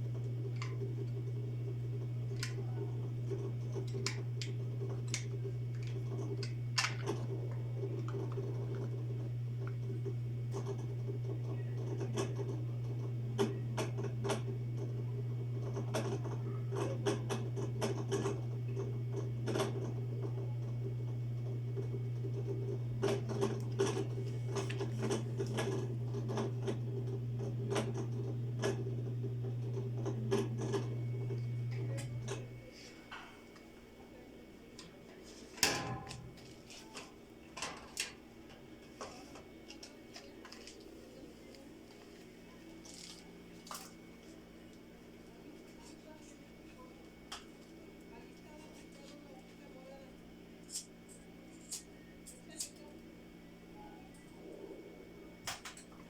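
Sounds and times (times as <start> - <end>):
low electrical hum: 0.0 - 56.0
small clicks and scratches: 0.1 - 15.0, 38.8 - 44.8, 45.6 - 49.7, 50.6 - 53.1.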